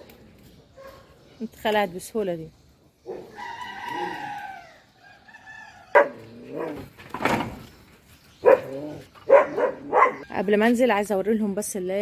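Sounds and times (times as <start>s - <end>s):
dog barking: 5.9s - 6.8s, 8.4s - 10.3s.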